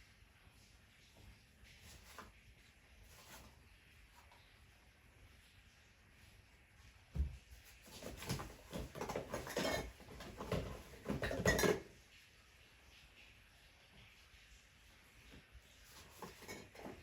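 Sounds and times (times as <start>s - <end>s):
objects knocking and clattering: 7.2s - 11.9s, 16.0s - 17.0s.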